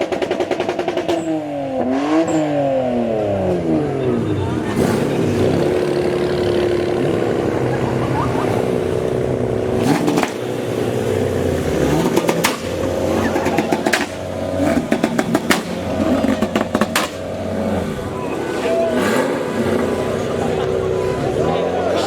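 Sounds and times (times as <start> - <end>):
car engines revving: 0.0 - 22.0
sharp cracks: 11.9 - 17.6.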